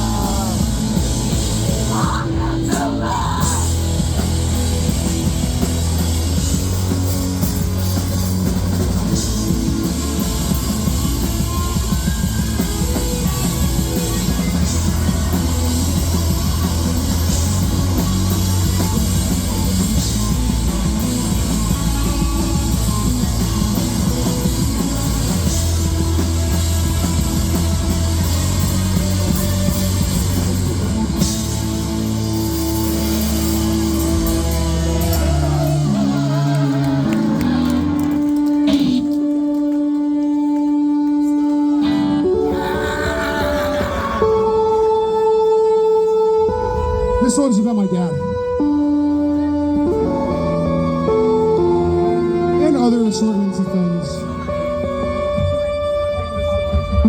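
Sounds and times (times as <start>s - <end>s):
drum kit: 0.0s - 39.3s
electric guitar: 0.0s - 47.2s
bass guitar: 0.0s - 57.0s.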